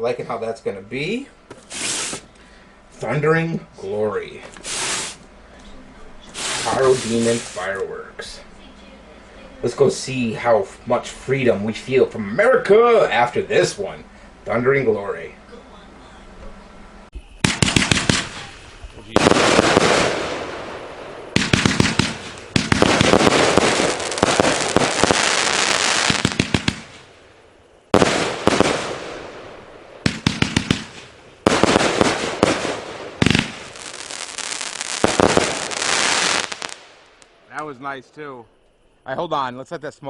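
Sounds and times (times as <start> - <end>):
firework bangs: 1.5 - 2.3, 4.6 - 5.2, 6.2 - 8.0, 17.2 - 37.3
firework crackling hiss: 1.5 - 2.4, 4.2 - 5.6, 6.2 - 10.6, 17.2 - 37.6.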